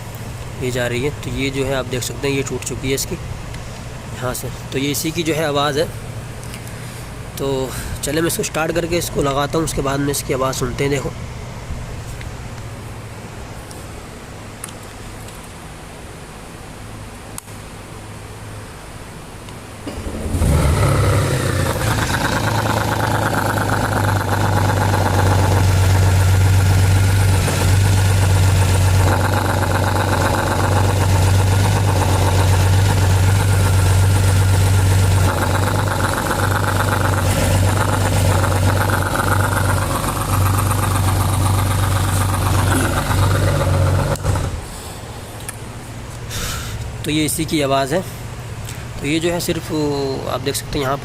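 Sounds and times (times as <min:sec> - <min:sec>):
motorcycle engine idling: 0:20.0 - 0:44.6.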